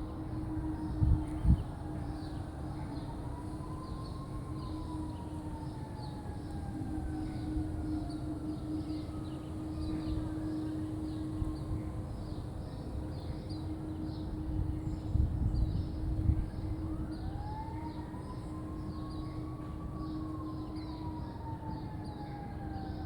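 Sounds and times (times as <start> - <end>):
low droning hum in sky: 6.4 - 20.0.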